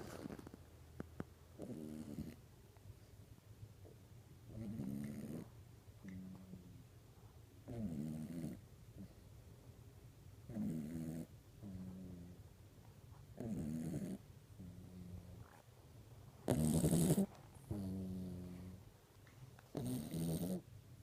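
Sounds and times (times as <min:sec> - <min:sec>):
dog snoring: 0:00.0 - 0:00.6, 0:01.6 - 0:02.4, 0:04.5 - 0:06.8, 0:07.6 - 0:09.2, 0:10.5 - 0:12.4, 0:13.4 - 0:15.6, 0:16.4 - 0:18.8, 0:19.7 - 0:20.7.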